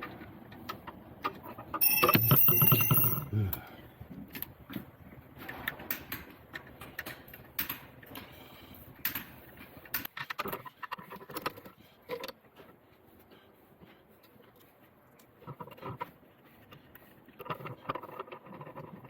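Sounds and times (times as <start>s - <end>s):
metallic clicks of hand tools: 5.9s - 8.3s.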